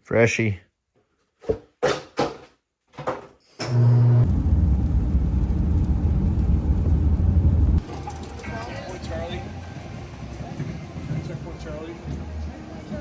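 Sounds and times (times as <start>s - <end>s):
vehicle engine running: 4.1s - 8.0s.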